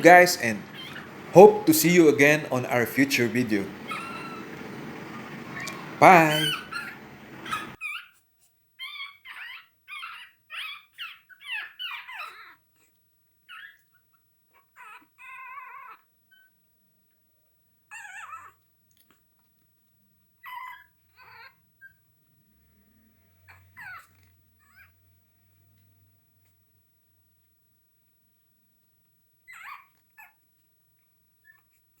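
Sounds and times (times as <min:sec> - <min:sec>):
puppies yelping and whining: 0:00.0 - 0:08.2, 0:08.8 - 0:16.6, 0:17.9 - 0:18.6, 0:20.4 - 0:22.2, 0:23.5 - 0:25.0, 0:29.4 - 0:30.5.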